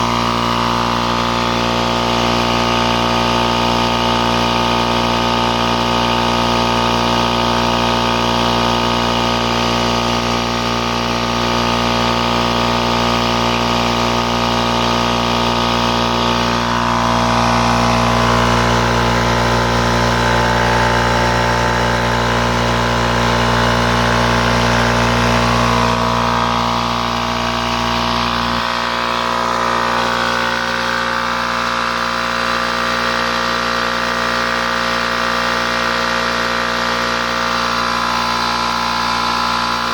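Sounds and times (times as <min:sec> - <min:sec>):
air compressor running: 0:00.0 - 0:39.9.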